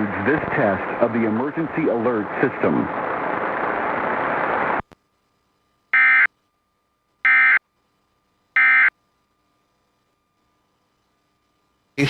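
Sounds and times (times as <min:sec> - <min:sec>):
radio hiss: 0:00.0 - 0:04.9.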